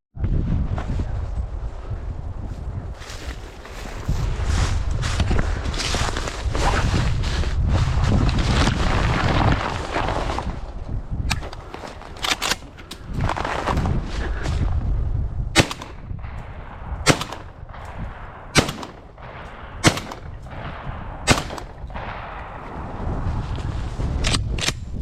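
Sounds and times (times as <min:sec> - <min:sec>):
gunshots: 0:15.6 - 0:22.8.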